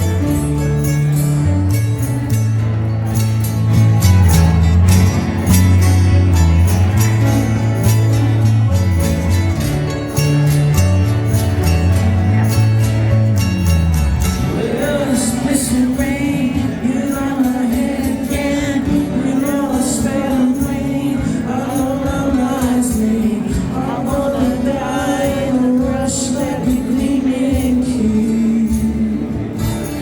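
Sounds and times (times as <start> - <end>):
acoustic guitar: 0.0 - 30.0
person singing: 14.4 - 30.0.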